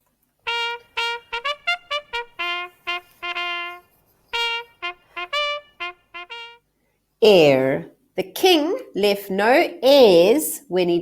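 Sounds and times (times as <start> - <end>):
trumpet tune: 0.4 - 6.8.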